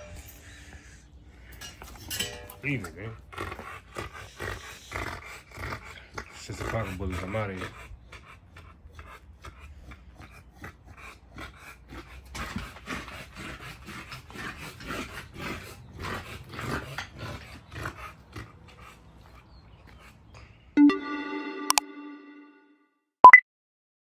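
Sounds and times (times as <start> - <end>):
dog breathing heavily: 0.0 - 20.8.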